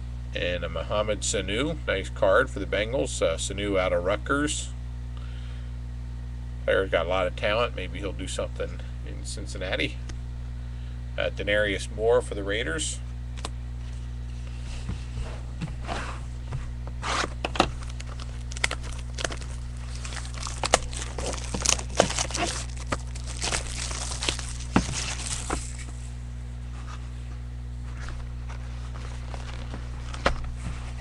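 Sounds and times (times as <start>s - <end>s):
steady low hum: 0.0s - 31.0s
card packs crinkling and tearing: 17.2s - 26.2s, 27.9s - 31.0s.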